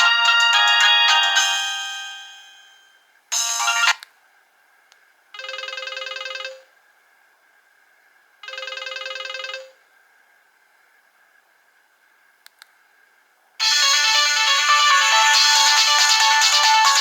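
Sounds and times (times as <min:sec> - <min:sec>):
mobile phone trilling ring: 0:08.4 - 0:09.8.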